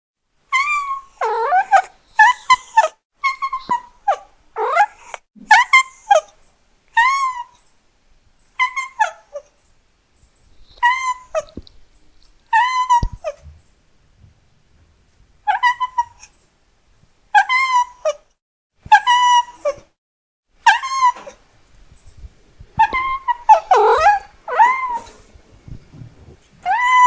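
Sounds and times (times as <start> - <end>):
cat meowing: 22.8 - 25.2, 26.6 - 27.0.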